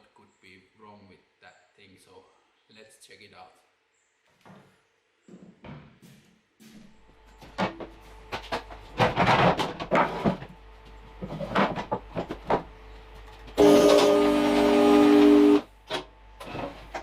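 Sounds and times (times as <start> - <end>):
handling knocks and scraping: 4.4 - 14.2
loud sustained multi-pitch tone: 12.8 - 15.8.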